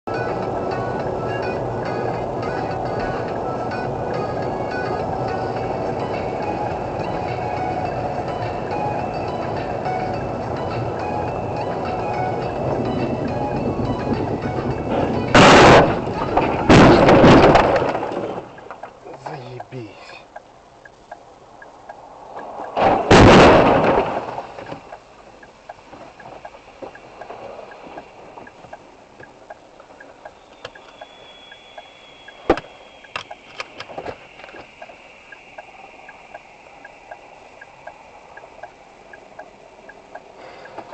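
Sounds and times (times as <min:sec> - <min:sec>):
car crash: 0:14.1 - 0:19.0, 0:22.3 - 0:24.9, 0:32.1 - 0:34.7
faint ticking: 0:18.5 - 0:22.8, 0:24.6 - 0:40.9.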